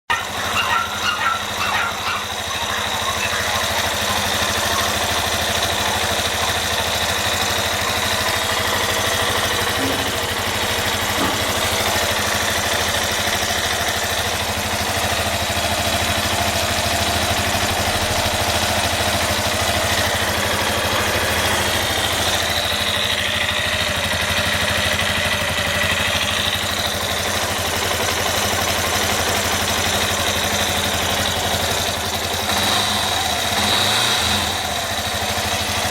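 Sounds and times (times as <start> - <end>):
motorcycle engine idling: 0.1 - 35.9
knocking noise from engine: 0.2 - 16.2.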